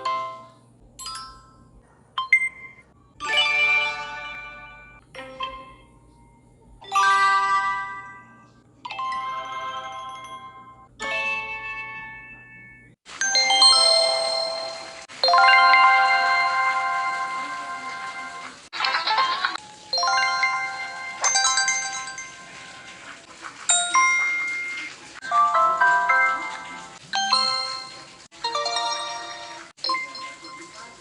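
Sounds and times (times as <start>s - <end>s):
bright chime and jingle stings: 6.8s - 18.5s, 19.9s - 22.9s, 23.7s - 30.6s.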